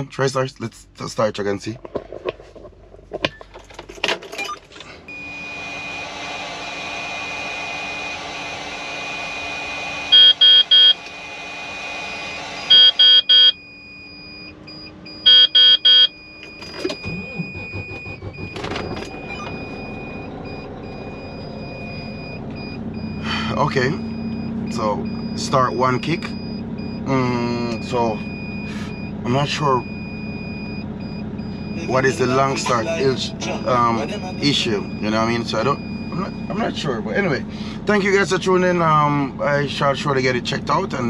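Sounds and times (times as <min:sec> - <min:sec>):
diesel engine cranking and running: 0:02.7 - 0:41.0
dash warning chime beeps: 0:10.1 - 0:11.0, 0:12.6 - 0:17.7, 0:19.1 - 0:36.8.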